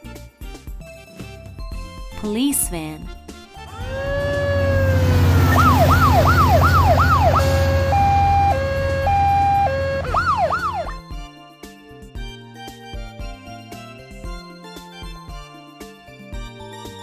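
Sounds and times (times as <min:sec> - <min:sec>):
background music: 0:00.0 - 0:17.0
low engine rumble: 0:03.6 - 0:10.9
police siren wailing and yelping: 0:03.7 - 0:11.0.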